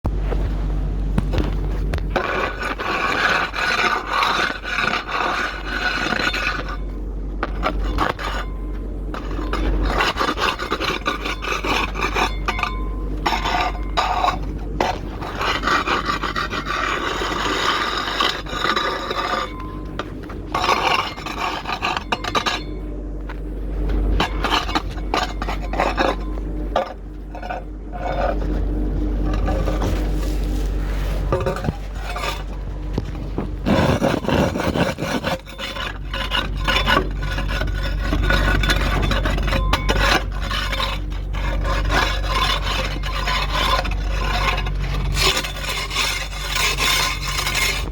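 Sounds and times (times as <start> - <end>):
steady low hum: 0.0 - 47.9
scraping against hard surface: 0.1 - 47.9.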